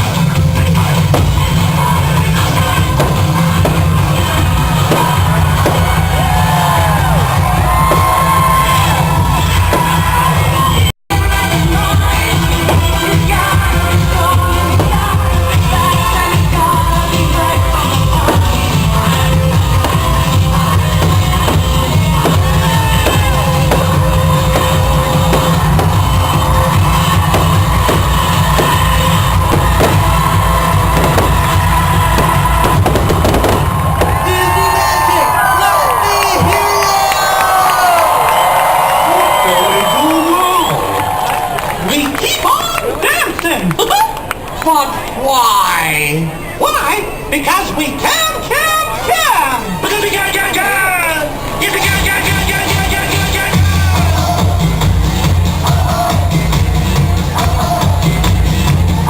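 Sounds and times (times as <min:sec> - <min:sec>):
drum kit steady beat: 0:00.0 - 0:34.7, 0:51.9 - 0:59.0
loud rock music: 0:00.0 - 0:35.5, 0:51.8 - 0:59.0
crowd yelling and whooping: 0:01.5 - 0:10.9, 0:12.9 - 0:43.1, 0:48.6 - 0:59.0.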